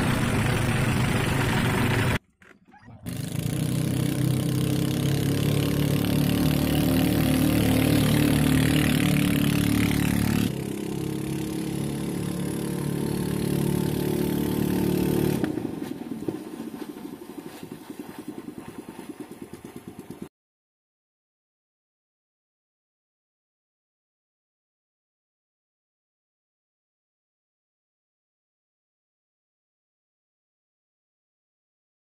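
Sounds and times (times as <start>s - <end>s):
engine running: 0.0s - 20.3s.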